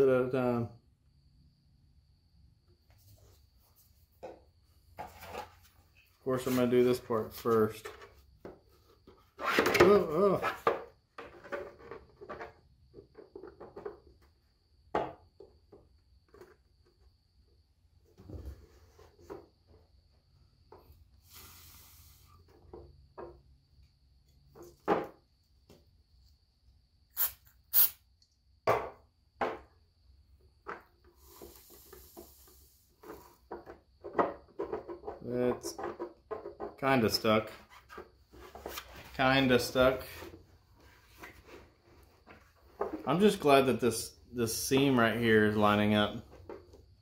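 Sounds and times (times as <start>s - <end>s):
short hiss: 21.2s - 22.4s, 27.1s - 28.1s.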